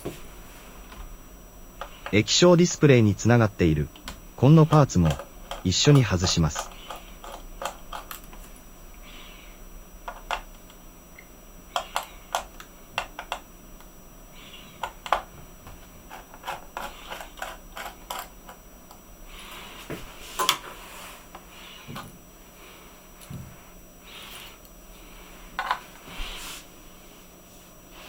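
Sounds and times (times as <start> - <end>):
plastic laptop parts clicking: 11.7 - 13.4.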